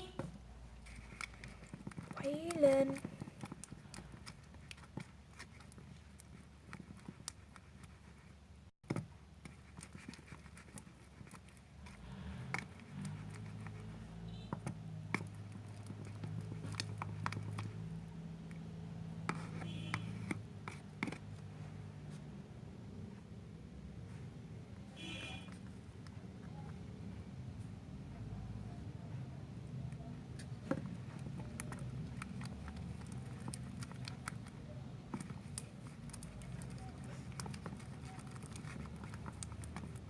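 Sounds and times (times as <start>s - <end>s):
utensil scraping slime container: 0.8s - 8.2s, 9.4s - 17.9s, 30.9s - 40.0s.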